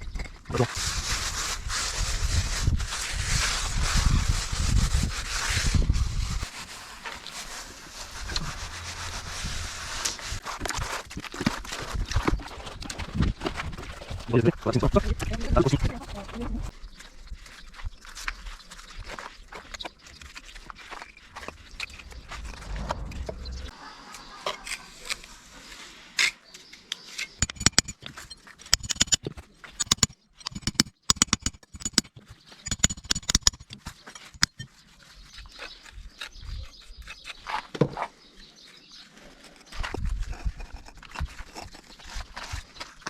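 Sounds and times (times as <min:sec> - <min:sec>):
sharp taps and knocks: 0:27.4 - 0:28.2, 0:28.8 - 0:34.7.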